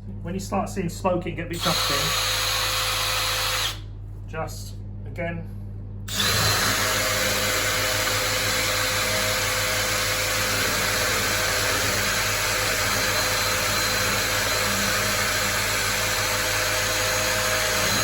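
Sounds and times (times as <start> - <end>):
drill grinding into tile: 1.6 - 3.8, 6.1 - 18.0.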